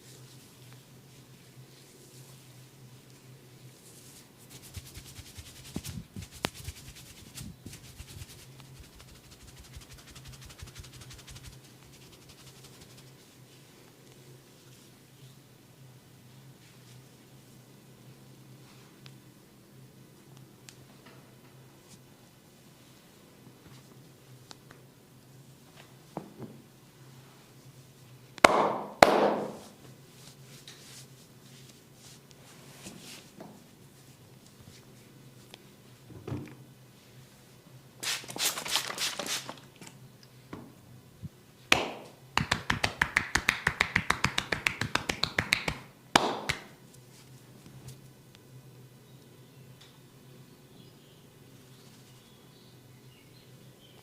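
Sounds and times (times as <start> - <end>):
steady low hum: 0.0 - 38.0
hands patting on skin: 4.0 - 13.2, 41.7 - 46.8
sharp slaps on skin: 28.4 - 29.6, 41.7 - 46.8.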